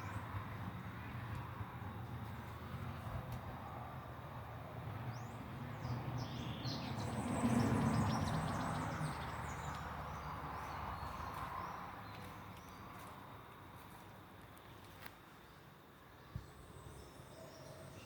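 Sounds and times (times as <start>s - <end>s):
birds chirping: 5.1s - 13.0s.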